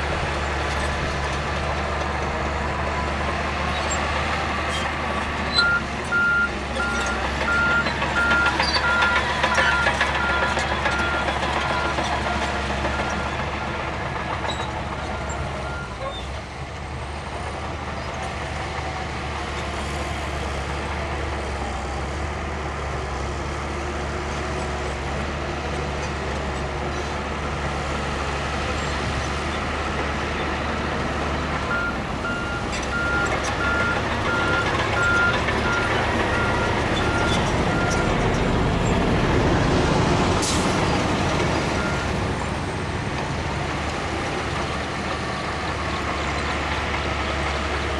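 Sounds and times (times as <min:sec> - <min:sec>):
heavy machinery diesel rumble: 0:00.0 - 0:47.9
reversing alarm beeping: 0:05.5 - 0:13.4, 0:31.6 - 0:38.3.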